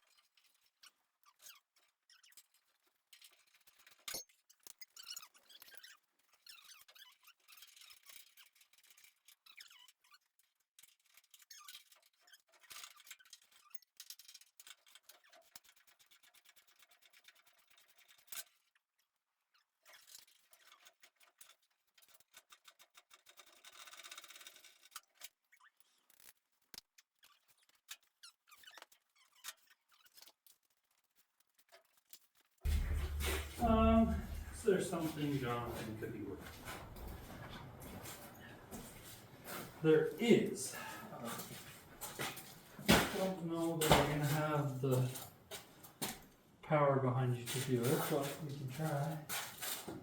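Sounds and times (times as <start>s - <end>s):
squeaks: 0.7s - 2.8s, 4.1s - 8.1s, 32.7s - 34.7s
scraping: 32.7s - 39.8s.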